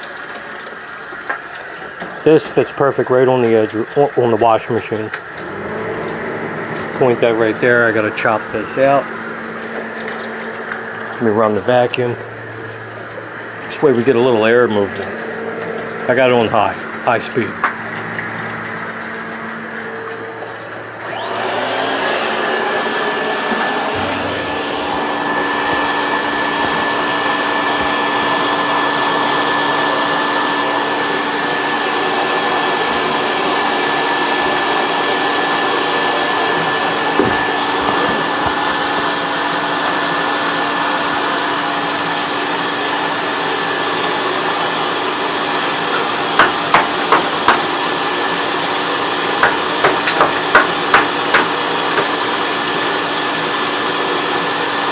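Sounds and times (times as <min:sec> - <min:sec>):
vacuum motor whining: 0:02.3 - 0:54.9
sharp knocks: 0:46.4 - 0:47.7, 0:49.4 - 0:52.2.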